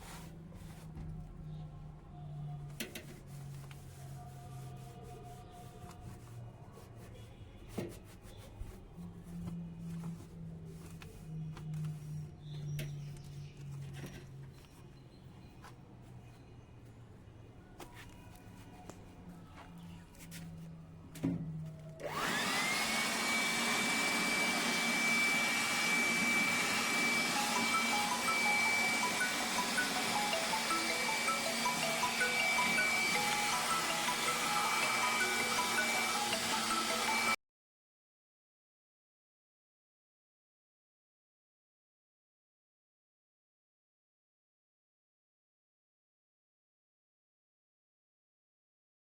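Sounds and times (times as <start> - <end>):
high-speed motor whine: 22.0 - 37.4.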